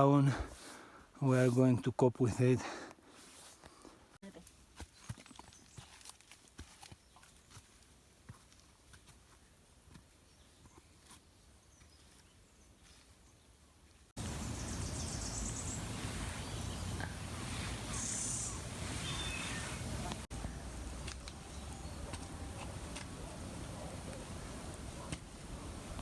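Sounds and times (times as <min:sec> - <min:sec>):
footstep clicks on trail: 0:04.8 - 0:12.3, 0:19.1 - 0:25.4.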